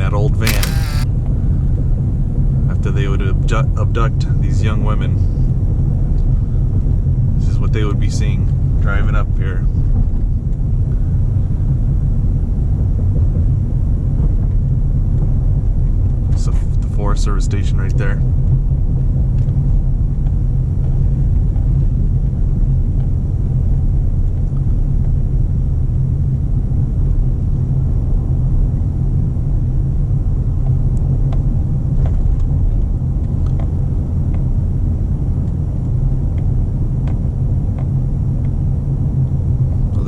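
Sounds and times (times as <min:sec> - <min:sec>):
faint clicks: 0:00.5 - 0:01.1.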